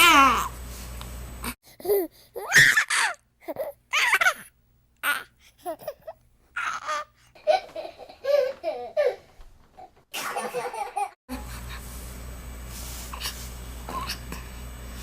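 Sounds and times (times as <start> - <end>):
steady background hum: 0.0 - 15.0
infant gasping: 1.6 - 2.6
infant laughing: 1.8 - 9.3.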